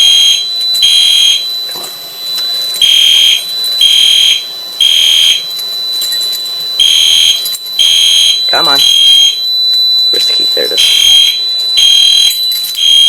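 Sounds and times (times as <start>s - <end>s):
fire alarm horn blasts: 0.0s - 13.0s
thin steady high tone: 0.0s - 13.0s.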